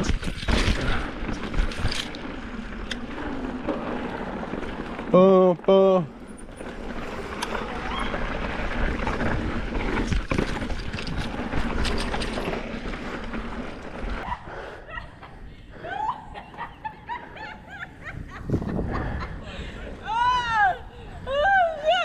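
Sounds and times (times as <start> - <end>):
bike rattling over bumps: 0.0 - 14.3
bike tyre and wind rush: 0.0 - 22.0.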